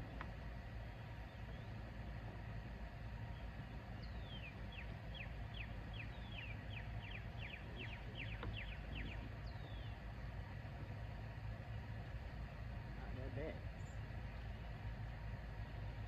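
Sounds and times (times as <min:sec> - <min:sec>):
low outdoor rumble: 0:00.0 - 0:16.0
small bird chirping: 0:04.0 - 0:10.0.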